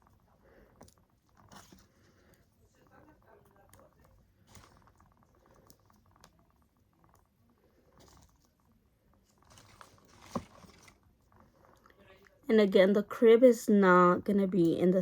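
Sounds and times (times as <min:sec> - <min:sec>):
soft rustling: 0:00.0 - 0:12.4.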